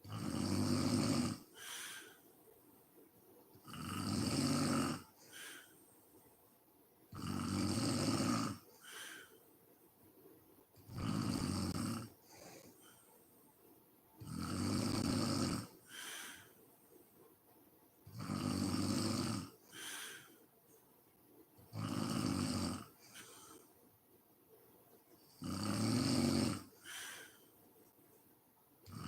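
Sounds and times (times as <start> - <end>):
woman snoring: 0.0 - 2.2, 3.6 - 5.7, 7.1 - 9.3, 10.8 - 12.8, 14.2 - 16.5, 18.1 - 20.3, 21.7 - 23.6, 25.3 - 27.4.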